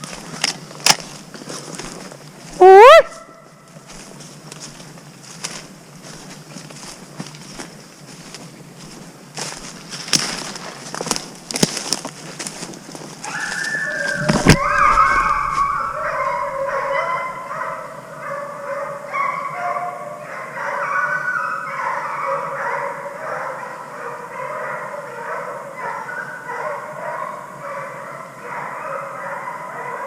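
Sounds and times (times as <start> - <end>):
hounds baying and barking: 2.6 - 4.8, 13.2 - 30.0.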